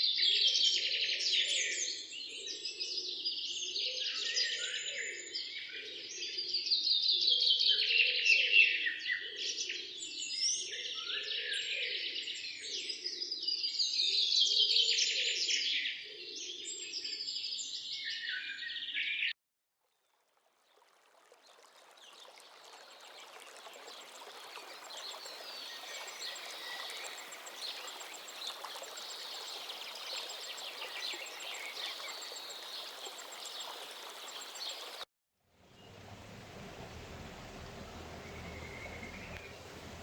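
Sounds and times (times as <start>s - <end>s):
birds chirping: 24.3s - 35.0s, 35.6s - 40.0s
stream rushing: 35.6s - 40.0s.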